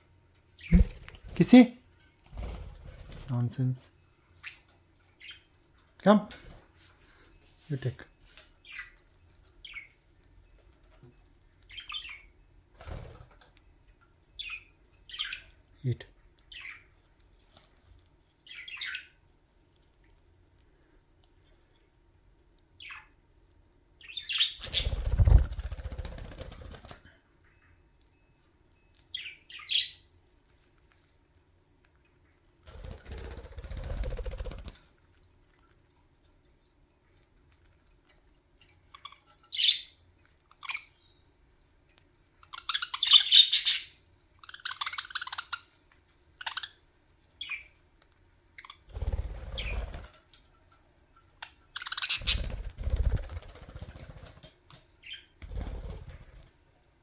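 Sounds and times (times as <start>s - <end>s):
wing flapping near microphone: 0.7s - 1.7s, 24.6s - 27.1s, 32.7s - 34.8s, 52.2s - 54.5s
budgerigars chirping: 42.5s - 45.6s, 51.8s - 52.6s.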